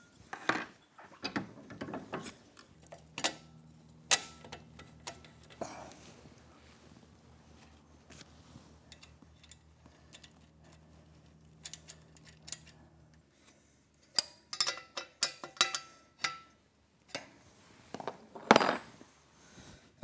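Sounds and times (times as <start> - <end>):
metal parts clicking and knocking: 11.6 - 12.8, 14.2 - 16.5.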